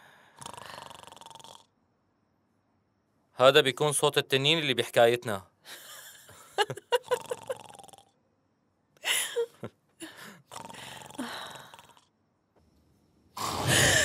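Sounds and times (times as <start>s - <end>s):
man snoring loudly: 0.3s - 1.7s, 7.0s - 8.1s, 10.5s - 12.1s.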